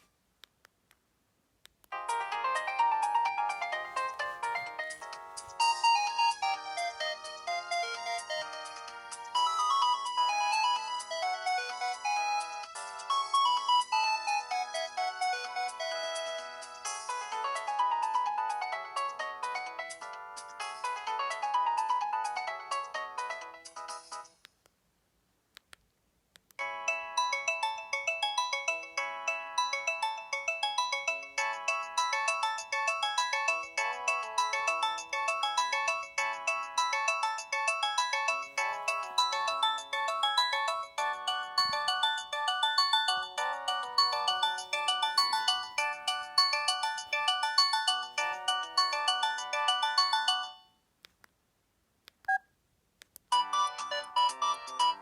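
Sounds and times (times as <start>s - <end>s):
synthesized phone ringtone melody: 2.0s - 20.1s, 26.6s - 50.7s, 53.3s - 55.0s.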